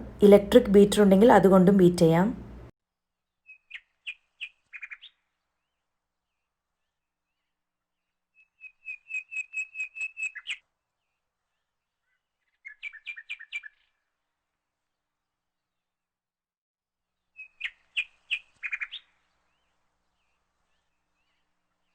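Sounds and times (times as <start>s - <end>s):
bird chirping: 8.4s - 10.6s, 12.0s - 13.9s.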